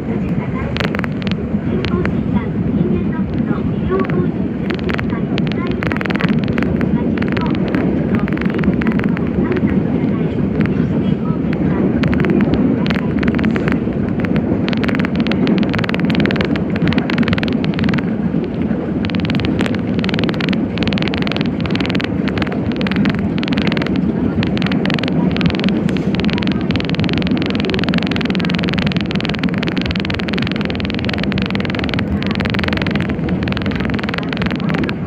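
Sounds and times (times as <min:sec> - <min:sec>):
irregular crackling: 0:00.0 - 0:35.0
train rumbling: 0:00.0 - 0:35.0.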